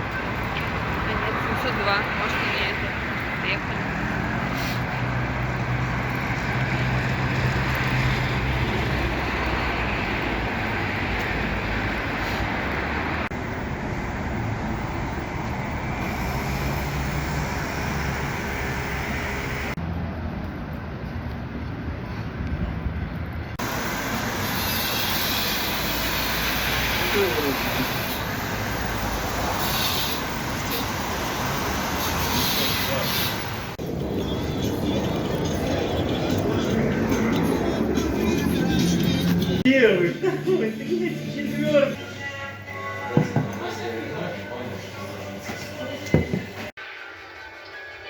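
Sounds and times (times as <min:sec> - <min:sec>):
vehicle and road noise: 0:00.0 - 0:47.6
low engine hum: 0:12.8 - 0:20.6.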